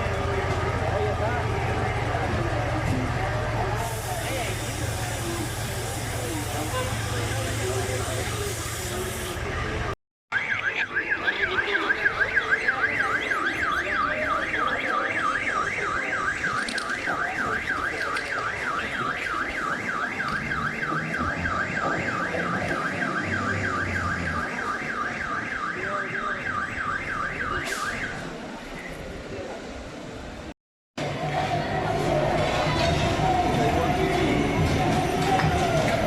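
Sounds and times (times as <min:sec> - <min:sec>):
electronic alarm siren wailing: 0:10.3 - 0:28.2.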